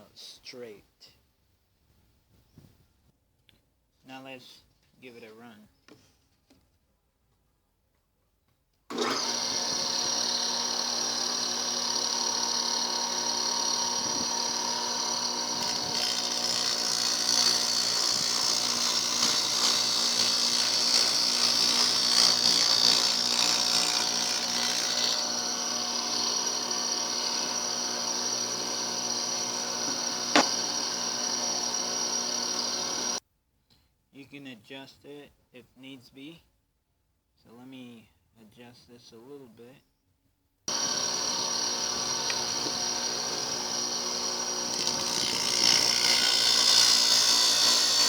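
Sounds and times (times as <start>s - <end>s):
abrasive disc grinding metal: 8.9s - 33.2s, 40.7s - 48.0s
table saw motor hum: 8.9s - 33.2s, 40.7s - 48.0s.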